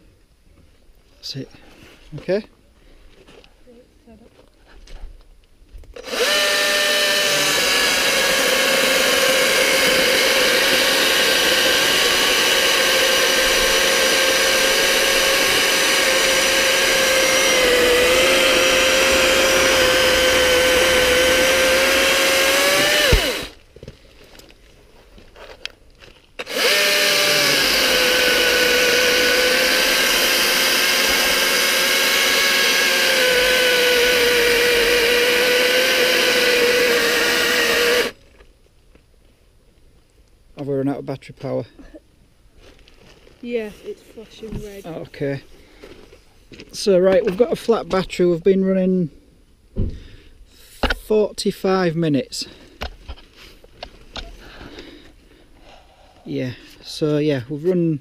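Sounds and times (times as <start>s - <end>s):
battery chainsaw whining: 6.0s - 23.6s, 26.4s - 38.2s
motor spinning down: 6.0s - 23.6s, 26.4s - 38.2s.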